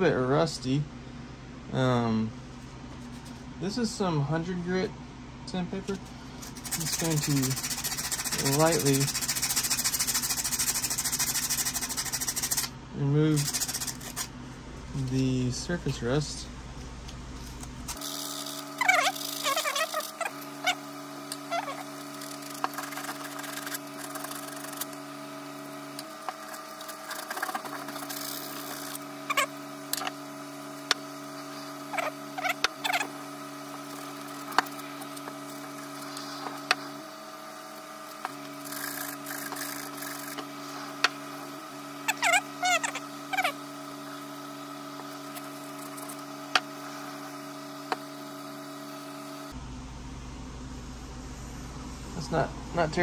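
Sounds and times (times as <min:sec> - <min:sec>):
low mechanical hum: 0:00.0 - 0:53.0
sandpaper scratching on steel: 0:06.4 - 0:12.7, 0:13.4 - 0:14.3, 0:18.8 - 0:20.8, 0:21.5 - 0:25.0, 0:26.1 - 0:29.5, 0:38.2 - 0:41.0.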